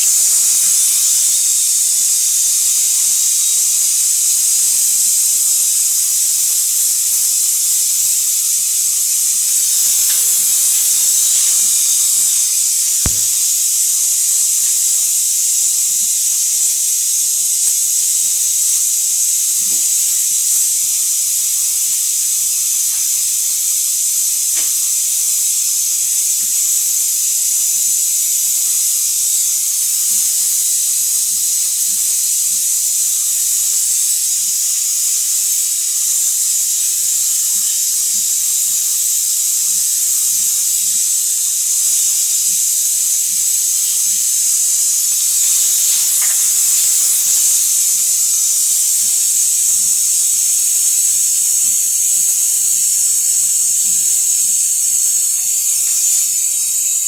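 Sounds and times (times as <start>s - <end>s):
gas hissing: 0.0s - 2.8s, 6.6s - 16.2s, 23.0s - 26.2s, 41.9s - 50.5s
sharp click: 9.5s - 13.8s, 45.3s - 47.6s.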